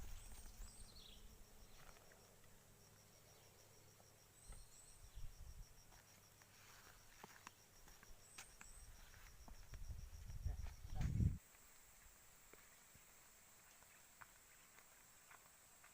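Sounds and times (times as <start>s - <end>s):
insect pulsing trill: 0.0s - 15.9s.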